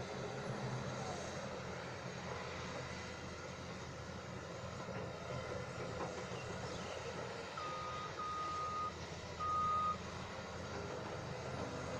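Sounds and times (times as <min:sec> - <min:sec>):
diesel engine running: 0:00.0 - 0:11.9
reversing alarm beeps: 0:07.6 - 0:10.0.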